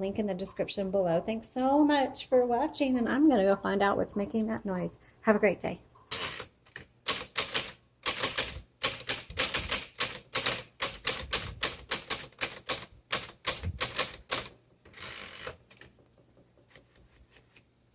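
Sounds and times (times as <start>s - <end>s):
electric typewriter key strikes: 7.1s - 15.6s.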